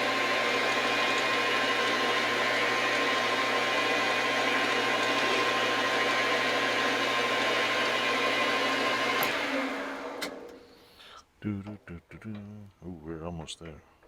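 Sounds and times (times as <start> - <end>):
metal lathe running: 0.0 - 10.6.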